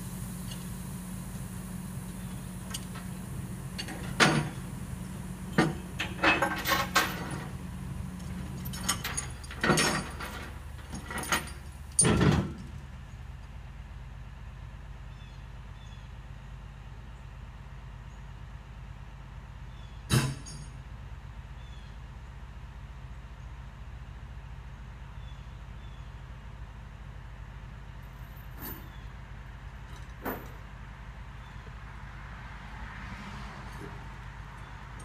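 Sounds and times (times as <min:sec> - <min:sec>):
diesel engine running: 0:00.0 - 0:35.0
metallic clanks and bangs: 0:02.6 - 0:12.7, 0:20.1 - 0:20.8.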